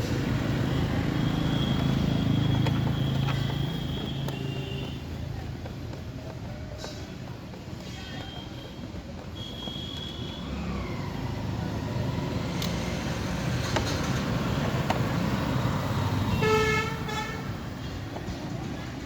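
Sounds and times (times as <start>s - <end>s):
road traffic rumbling: 0.0s - 19.0s
vehicle horn tooting: 1.2s - 5.0s, 9.4s - 10.6s, 16.2s - 17.6s.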